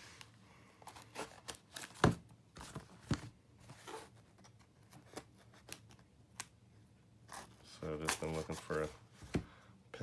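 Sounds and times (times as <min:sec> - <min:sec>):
package knocks and rustles: 0:01.9 - 0:03.3.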